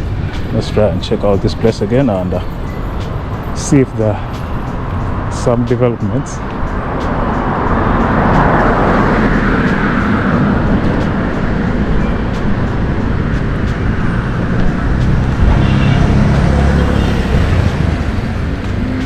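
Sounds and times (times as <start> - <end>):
low traffic rumble: 0.0 - 19.0
vehicle passing close by: 6.4 - 19.0.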